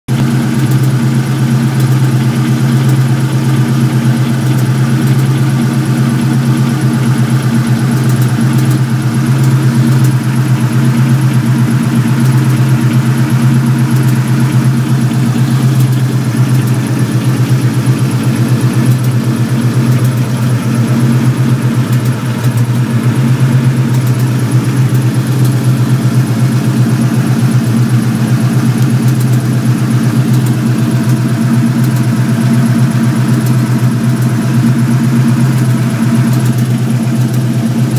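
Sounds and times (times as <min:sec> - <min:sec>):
car engine idling: 0:00.1 - 0:37.9
faint engine pops: 0:07.8 - 0:32.4.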